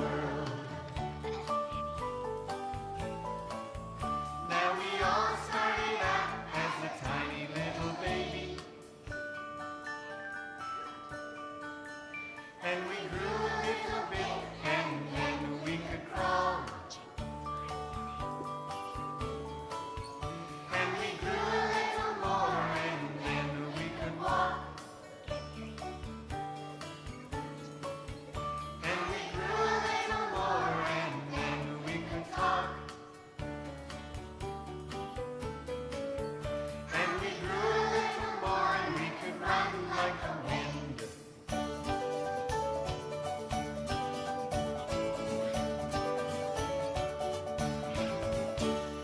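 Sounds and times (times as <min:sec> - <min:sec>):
children singing in unison: 0:00.0 - 0:01.5, 0:04.4 - 0:08.9, 0:12.6 - 0:17.2, 0:20.5 - 0:25.3, 0:28.8 - 0:33.1, 0:36.9 - 0:41.2
instrumental accompaniment with bass: 0:00.0 - 0:49.0.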